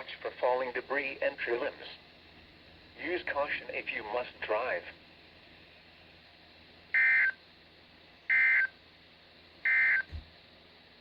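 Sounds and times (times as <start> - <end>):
faint radio hiss: 0.0 - 6.9.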